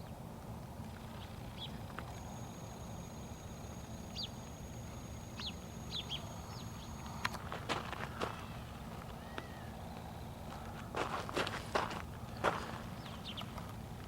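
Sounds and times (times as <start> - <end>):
thin high whine: 0.8 - 9.0
small bird chirping: 1.0 - 7.4.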